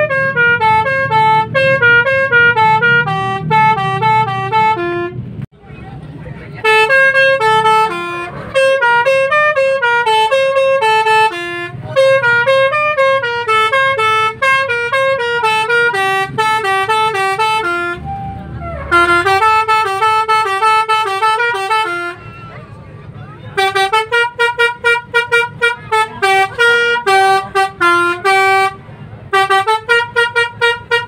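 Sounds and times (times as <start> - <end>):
bus multi-tone horn tune: 0.0 - 5.5, 6.5 - 31.0.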